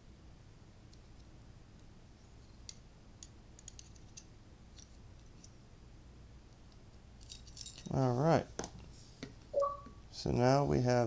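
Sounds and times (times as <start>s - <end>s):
faint small metal clicks: 2.6s - 5.6s.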